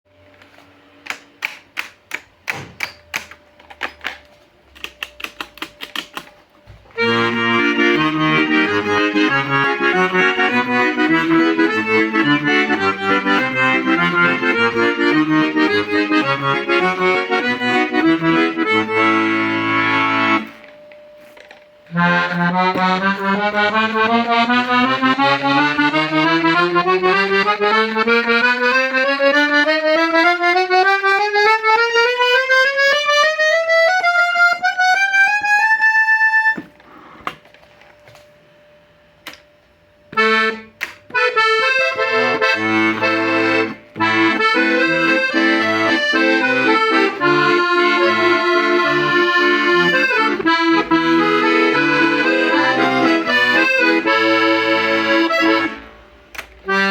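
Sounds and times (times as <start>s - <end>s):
clicks: 0.4s - 6.4s
accordion tune with chords and bass: 4.9s - 37.3s, 40.0s - 56.9s
accordion rising scale: 6.9s - 20.6s, 21.9s - 37.2s, 40.1s - 56.0s, 56.6s - 56.9s.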